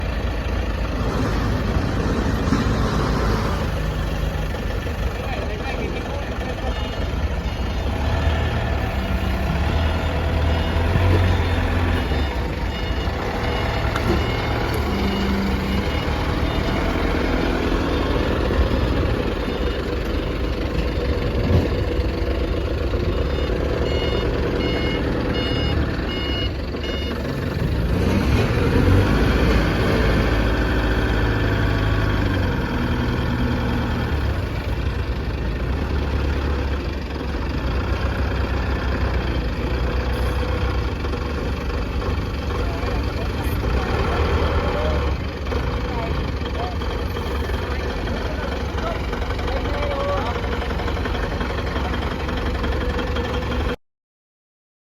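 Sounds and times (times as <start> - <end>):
forklift running: 0.0 - 53.8
reversing alarm beeping: 6.4 - 20.9, 22.4 - 27.4.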